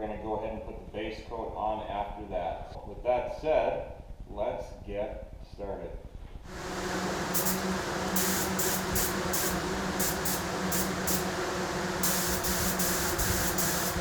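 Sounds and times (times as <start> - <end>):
spray hissing in short bursts: 6.5 - 14.0
steady low hum: 6.5 - 14.0.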